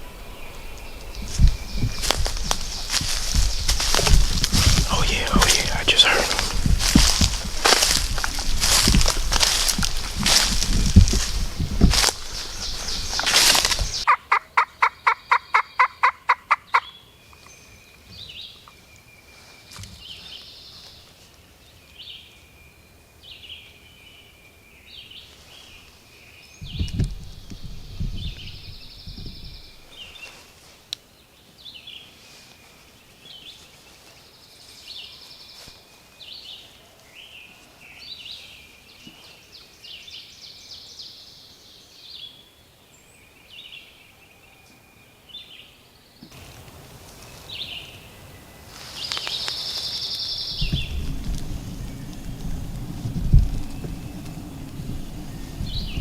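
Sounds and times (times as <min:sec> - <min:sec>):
low rumbling noise: 0:00.0 - 0:14.1, 0:50.4 - 0:56.0
songbirds calling: 0:00.0 - 0:56.0
turkey gobbling notes: 0:14.1 - 0:16.9.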